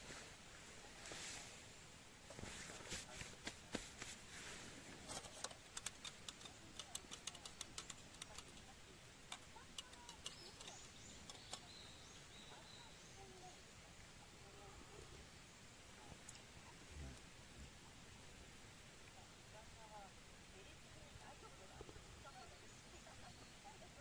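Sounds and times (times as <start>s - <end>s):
wood fire crackling: 0.0s - 12.3s
faint high chirps: 9.5s - 17.2s.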